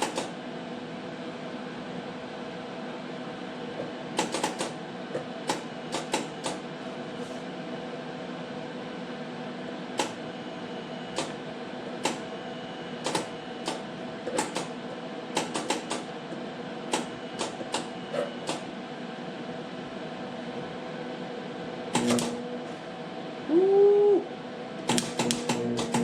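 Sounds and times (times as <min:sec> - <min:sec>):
welding machine humming: 0:21.9 - 0:22.8, 0:24.8 - 0:26.0.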